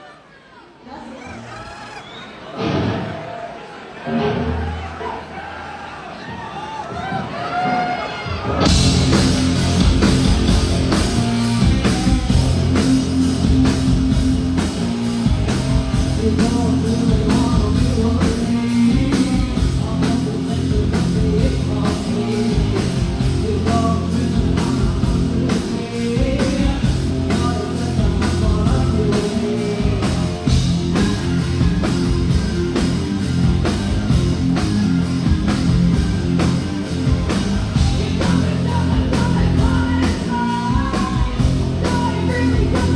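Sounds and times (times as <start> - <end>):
distorted electric guitars: 4.0 - 5.0, 8.1 - 42.9
live rock band playing: 7.6 - 42.9
fast drum beat: 8.6 - 42.9
person singing: 15.5 - 32.0, 37.7 - 42.9.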